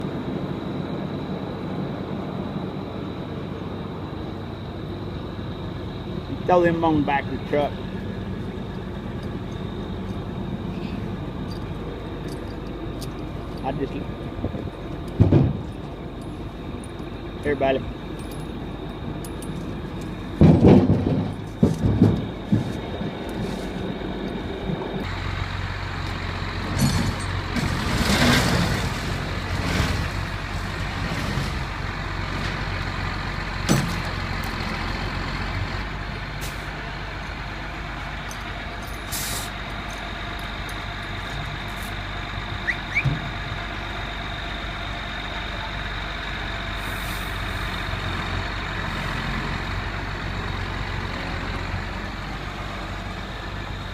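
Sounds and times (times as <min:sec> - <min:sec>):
truck engine humming: 0:00.0 - 0:53.9
loud thumps and knocks: 0:15.2 - 0:15.7, 0:20.4 - 0:22.8.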